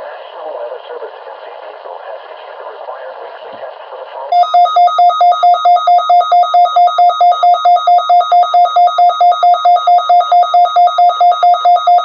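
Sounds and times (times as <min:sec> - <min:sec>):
rapid electronic alert beeps: 0:04.4 - 0:12.0.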